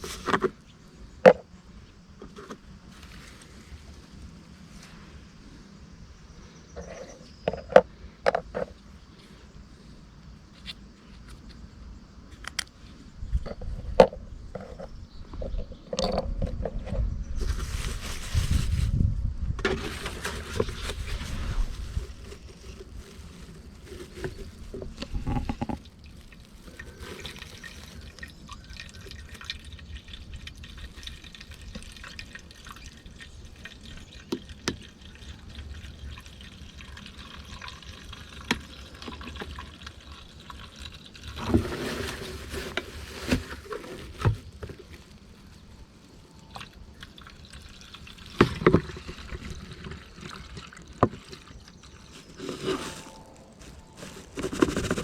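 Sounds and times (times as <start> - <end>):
handling knocks and clatters: 6.8 - 8.8, 19.6 - 25.9
liquid trickling into tank: 24.4 - 43.3, 46.4 - 52.3.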